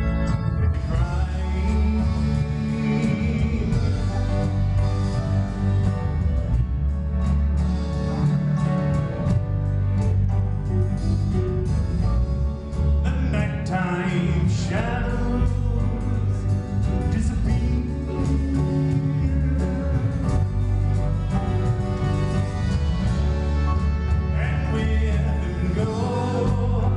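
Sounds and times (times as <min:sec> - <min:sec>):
man singing: 0:00.0 - 0:05.2, 0:13.0 - 0:21.7, 0:24.1 - 0:26.9
live band playing: 0:00.0 - 0:26.9.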